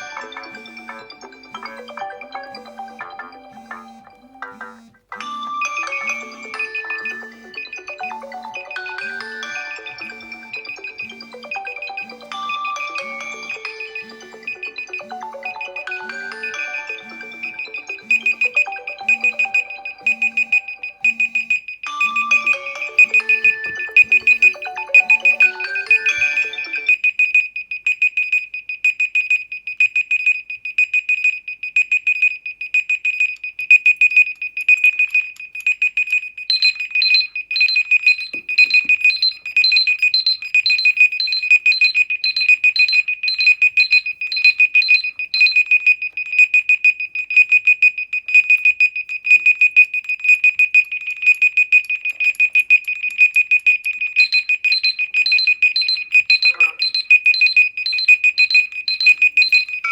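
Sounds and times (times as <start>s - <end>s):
higher electronic beep: 0.0s - 27.0s, 56.4s - 57.1s
phone alarm beeping: 0.0s - 28.4s, 29.1s - 59.9s.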